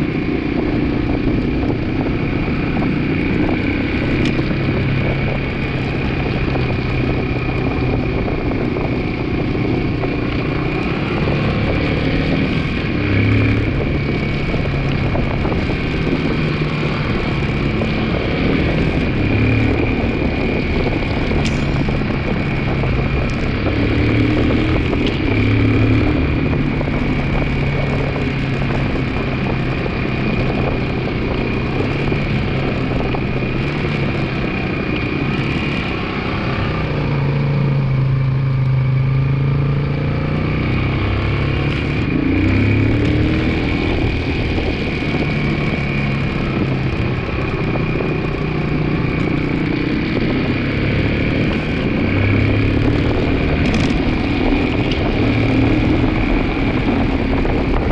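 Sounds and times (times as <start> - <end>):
motorcycle engine revving: 0.0 - 57.9.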